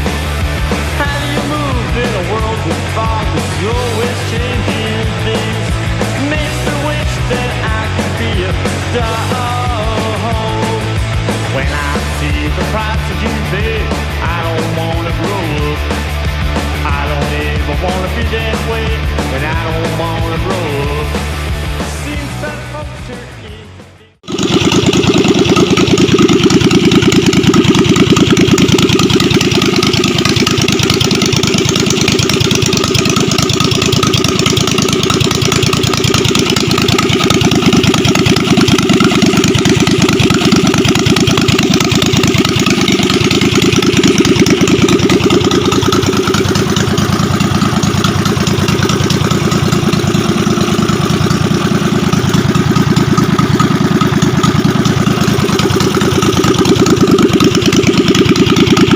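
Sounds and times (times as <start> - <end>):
engine running steadily: 0.0 - 58.9.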